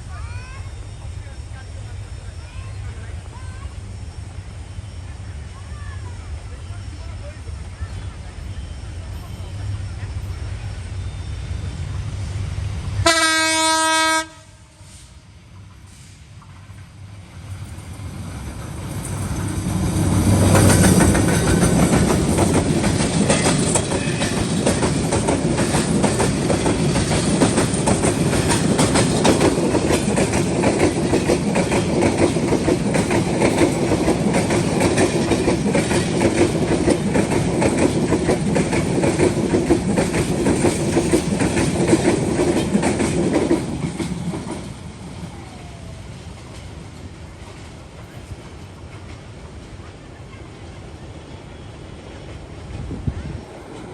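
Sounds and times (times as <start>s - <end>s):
train passing at speed: 0.0s - 53.9s
wheels clattering over rail joints: 17.6s - 44.9s.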